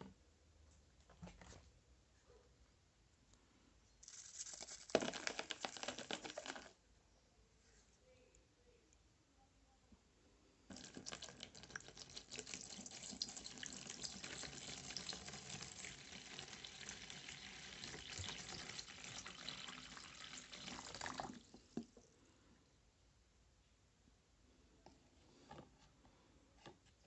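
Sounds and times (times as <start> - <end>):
water running from a tap: 10.8 - 21.4.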